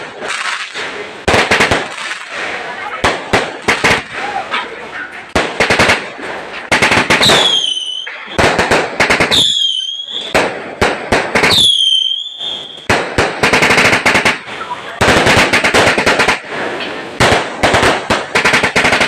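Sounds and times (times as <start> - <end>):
fireworks cracks and pops: 0.0 - 19.0
firework whistle: 7.1 - 10.5, 11.4 - 16.2.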